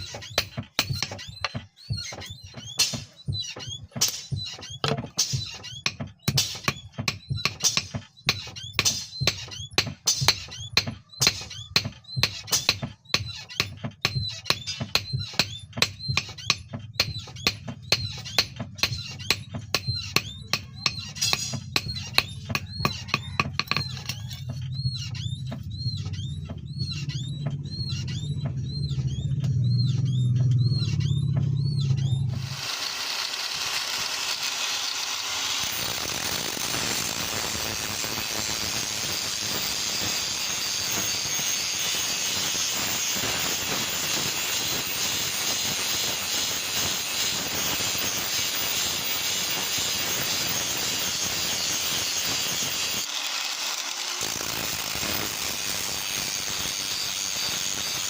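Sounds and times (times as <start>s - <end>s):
power tool motor hum with squeal: 0.0s - 58.0s
grinding hiss on metal: 34.8s - 53.0s, 53.9s - 58.0s.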